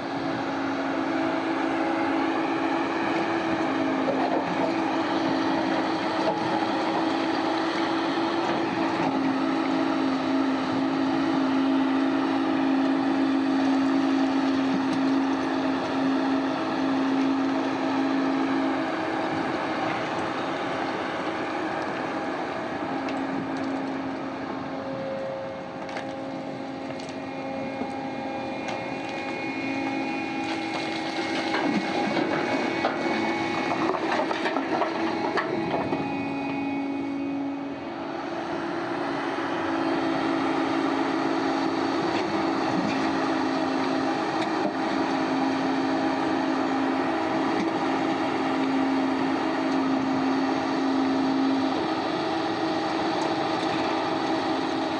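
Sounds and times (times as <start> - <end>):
heavy diesel machinery running: 0.0 - 54.9.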